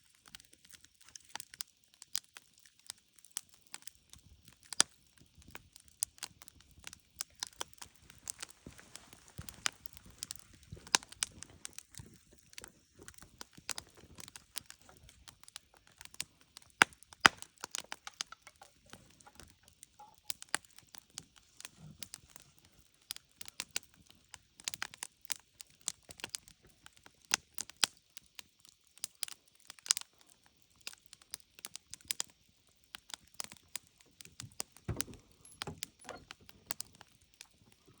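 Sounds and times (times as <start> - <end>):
campfire crackling and popping: 0.0 - 38.0.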